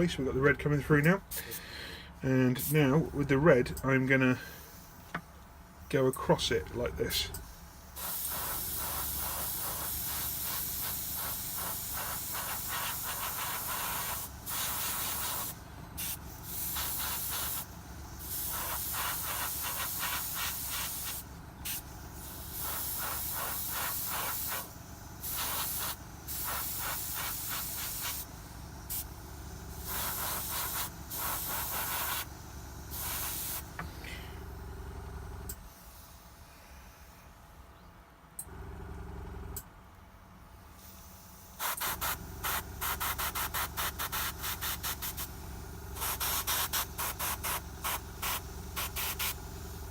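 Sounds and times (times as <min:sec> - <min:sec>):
steady low hum: 0:00.0 - 0:49.9
airbrush air hiss: 0:04.2 - 0:05.2, 0:07.4 - 0:29.2, 0:29.8 - 0:34.4, 0:40.7 - 0:49.8.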